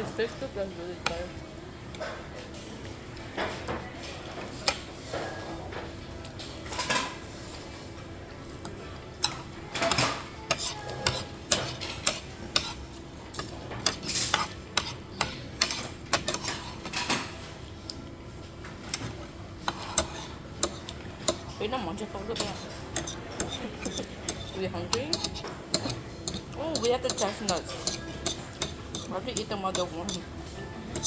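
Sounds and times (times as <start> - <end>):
steady background hum: 0.0 - 31.0
cutlery clinking on plates: 3.3 - 7.6, 9.2 - 17.6, 18.8 - 21.6, 22.3 - 31.0.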